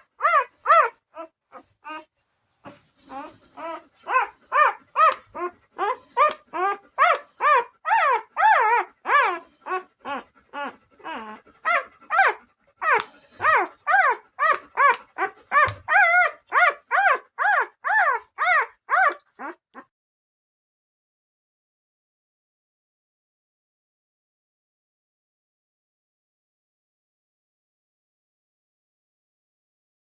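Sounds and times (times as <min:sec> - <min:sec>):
puppy whimpering and crying: 0:00.0 - 0:19.9.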